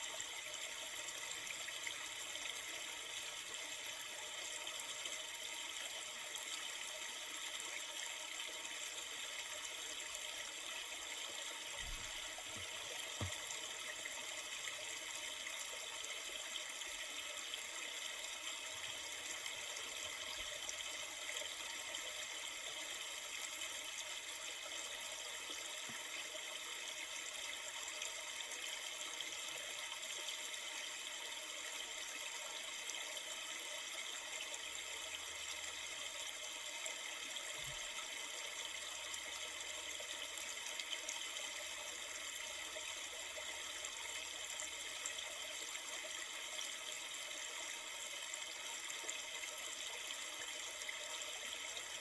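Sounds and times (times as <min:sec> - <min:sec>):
river water flowing: 0:09.7 - 0:20.6.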